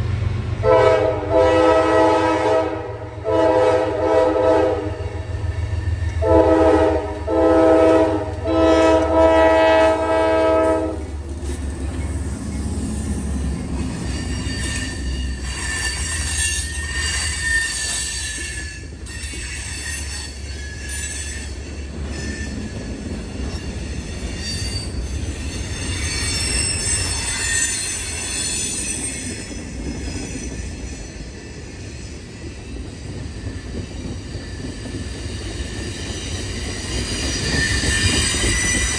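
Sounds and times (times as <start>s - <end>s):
train rumbling past: 0.0s - 38.9s
locomotive air horn chord: 0.6s - 5.1s, 6.2s - 11.1s
high metallic wheel squeal: 12.0s - 38.9s.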